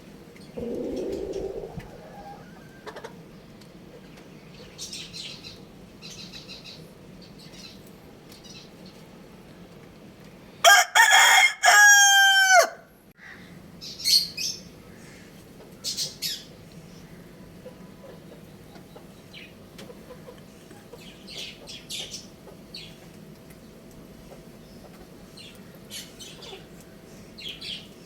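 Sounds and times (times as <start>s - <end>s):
rooster crowing: 0.6s - 3.0s, 10.6s - 12.9s
chicken clucks and chirps: 0.6s - 3.5s, 17.6s - 23.2s, 24.3s - 26.8s.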